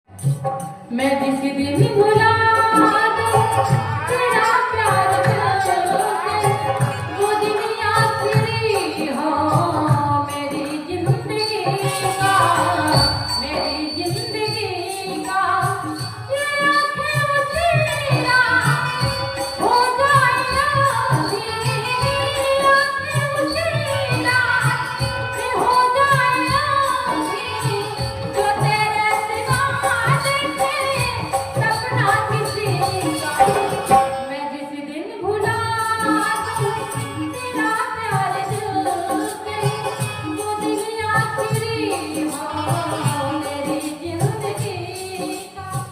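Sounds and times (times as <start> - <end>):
rhythmic percussion beat: 0.1 - 34.3, 35.3 - 45.9
woman singing: 0.8 - 45.9.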